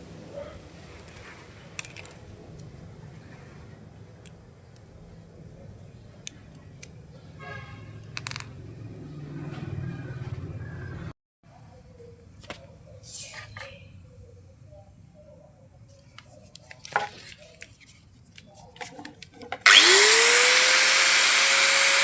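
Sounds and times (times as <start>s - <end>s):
small metal parts clinking: 1.8s - 2.2s, 8.0s - 8.6s.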